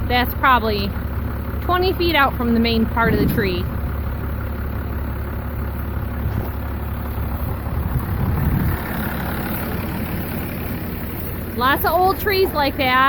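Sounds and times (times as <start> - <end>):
diesel engine idling: 0.0 - 13.0.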